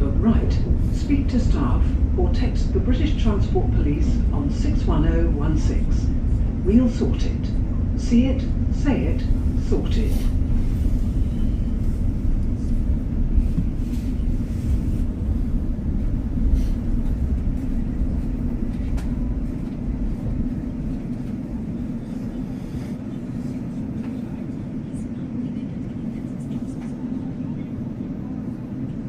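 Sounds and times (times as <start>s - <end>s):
train wheels rumbling: 0.0s - 24.4s.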